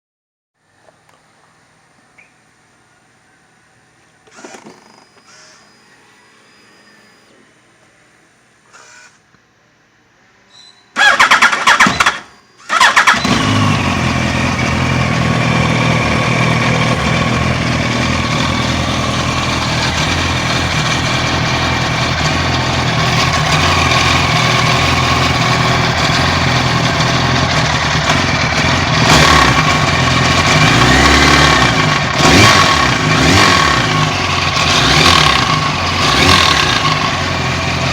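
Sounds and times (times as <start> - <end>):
engine starter cranking: 11.0 - 13.9
engine rattle: 11.0 - 37.9
engine throttle blips: 11.0 - 37.9
motorcycle engine idling: 13.2 - 37.9.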